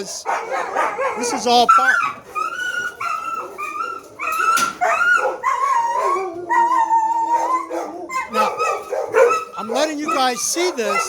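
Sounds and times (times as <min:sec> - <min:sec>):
sharp dog bark: 0:00.0 - 0:01.6, 0:07.7 - 0:11.0
puppies screaming and yelping: 0:00.0 - 0:11.0.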